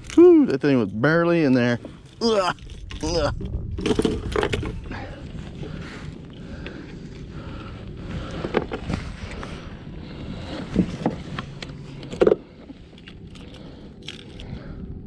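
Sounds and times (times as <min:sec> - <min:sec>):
wind noise: 0:00.0 - 0:15.0.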